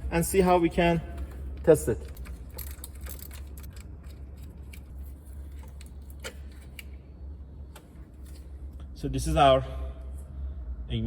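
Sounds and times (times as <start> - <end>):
steady low hum: 0.0 - 11.0
tools clicking and rattling: 0.3 - 7.0.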